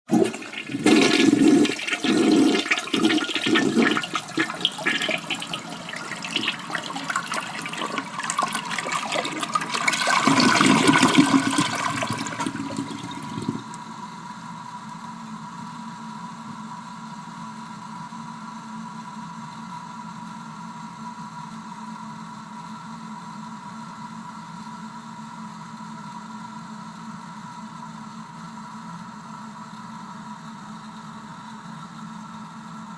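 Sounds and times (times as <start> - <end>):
toilet flushing: 0.0 - 13.8
cistern refilling hiss: 0.1 - 13.8.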